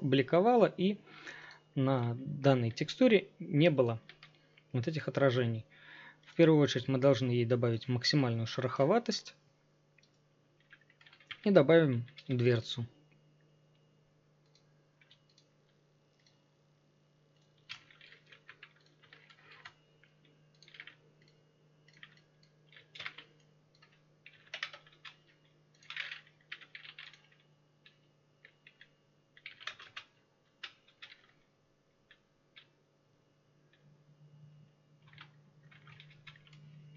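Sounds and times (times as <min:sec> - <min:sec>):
faint low hum: 0:00.0 - 0:36.9
keyboard typing clicks: 0:10.0 - 0:11.4, 0:14.4 - 0:15.5, 0:17.4 - 0:31.4, 0:32.1 - 0:32.8, 0:35.0 - 0:36.9.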